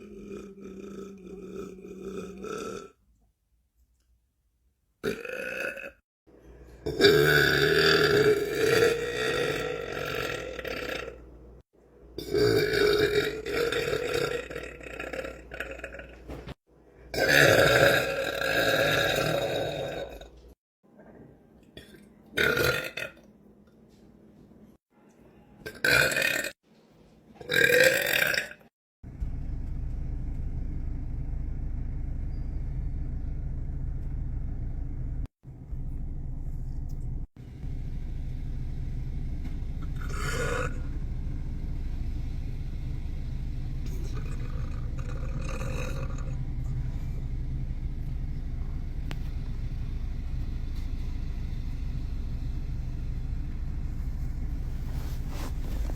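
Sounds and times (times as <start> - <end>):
man belching: 5.0 - 6.0, 6.8 - 11.2, 12.2 - 16.2, 27.5 - 28.6
steady low rumble: 29.1 - 55.9.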